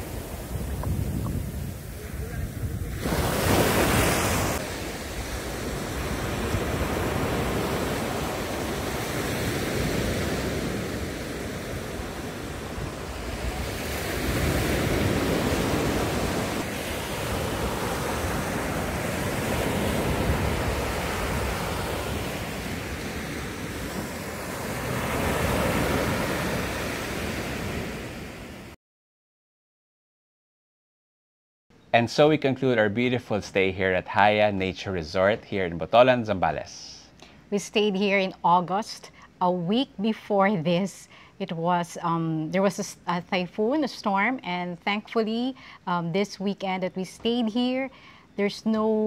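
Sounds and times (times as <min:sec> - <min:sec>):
ocean waves breaking: 0:00.0 - 0:28.8.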